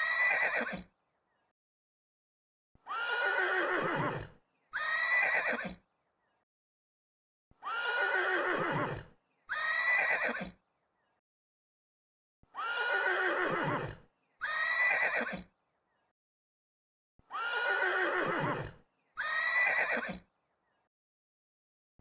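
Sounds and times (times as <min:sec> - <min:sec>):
horse whinnying: 0:00.0 - 0:00.9, 0:02.9 - 0:05.8, 0:07.6 - 0:10.6, 0:12.6 - 0:15.5, 0:17.3 - 0:20.2.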